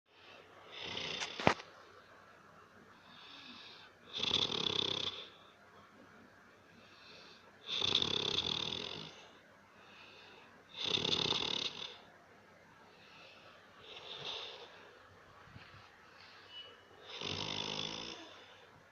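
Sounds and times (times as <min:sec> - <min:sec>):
quiet breaths: 0:00.1 - 0:18.9
person snoring: 0:00.7 - 0:01.6, 0:03.2 - 0:05.4, 0:07.2 - 0:09.3, 0:10.7 - 0:12.0, 0:13.8 - 0:14.8, 0:17.0 - 0:18.6.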